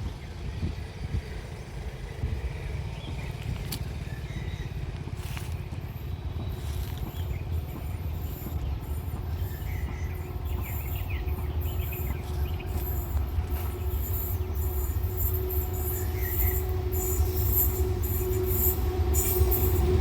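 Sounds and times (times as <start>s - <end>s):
continuous low rumble: 0.0s - 20.0s
insects buzzing: 9.7s - 20.0s.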